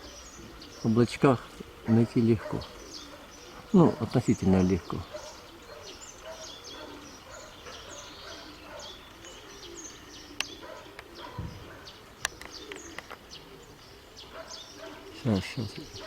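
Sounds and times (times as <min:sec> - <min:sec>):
pigeons cooing: 0:00.0 - 0:16.0
small birds chirping: 0:00.0 - 0:16.0.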